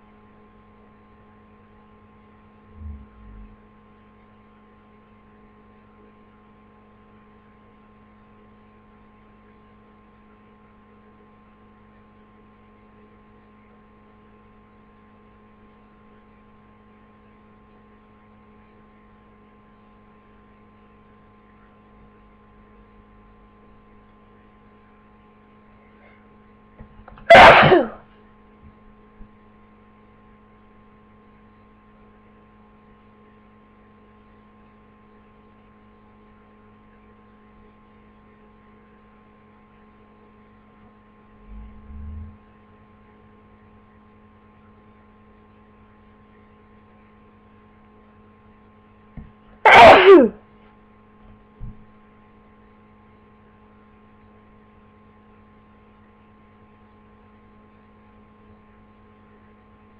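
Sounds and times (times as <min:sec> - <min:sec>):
steady electrical hum: 0:00.0 - 0:59.9
person sneezing: 0:27.2 - 0:28.0, 0:49.7 - 0:50.4.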